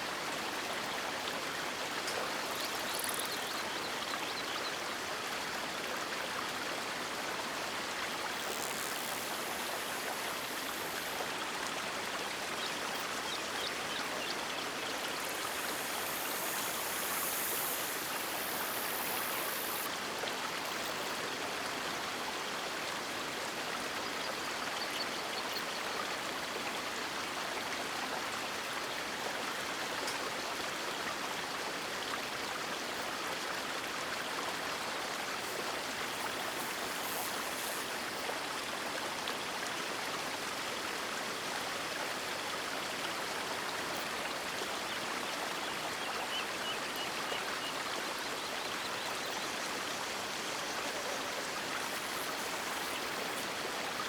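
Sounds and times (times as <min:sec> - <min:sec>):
faint high hiss: 0:01.8 - 0:04.8, 0:07.5 - 0:21.4, 0:34.9 - 0:42.6, 0:46.1 - 0:54.0
river water rushing: 0:49.6 - 0:54.0.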